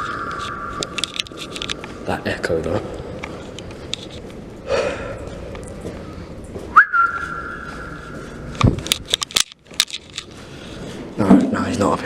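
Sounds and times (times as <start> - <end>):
person whistling a held note: 6.8 - 8.0.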